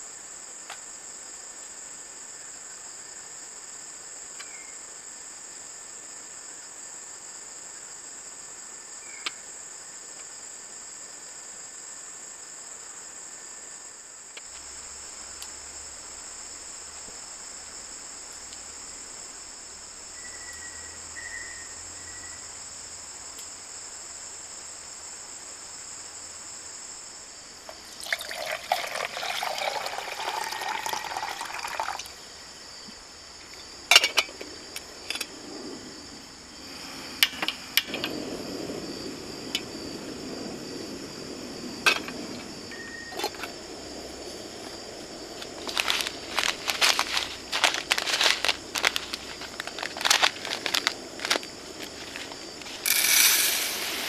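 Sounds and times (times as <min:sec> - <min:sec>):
crickets trilling: 0:00.0 - 0:54.0
liquid pouring: 0:27.7 - 0:32.1, 0:52.8 - 0:54.0.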